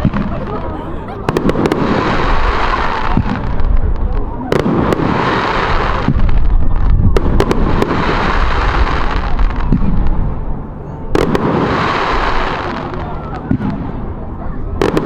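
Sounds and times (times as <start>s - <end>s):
low booming: 0.0s - 15.0s
fireworks crackling hiss: 1.3s - 6.6s, 7.2s - 10.1s, 11.2s - 13.8s
sharp firework cracks: 1.3s - 10.2s, 11.2s - 14.0s, 14.8s - 15.0s.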